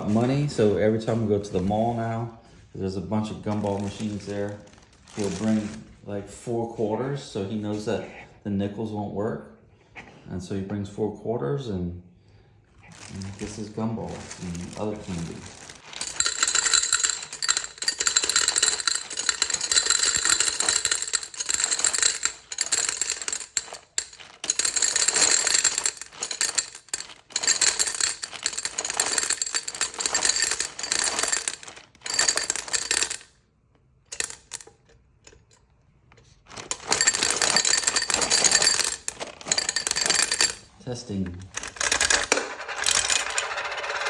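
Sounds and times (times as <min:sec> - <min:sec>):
gumball machine rattling and clinking: 0:03.5 - 0:05.8, 0:12.9 - 0:33.3, 0:34.1 - 0:35.6, 0:36.5 - 0:44.0.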